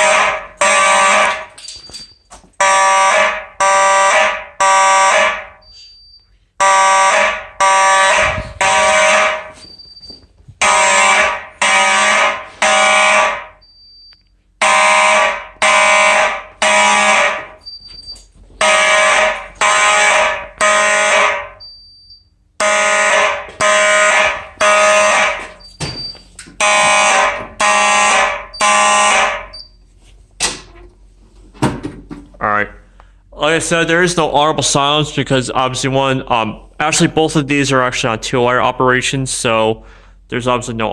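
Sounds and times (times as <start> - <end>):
fire alarm horns buzzing: 0.0 - 29.9.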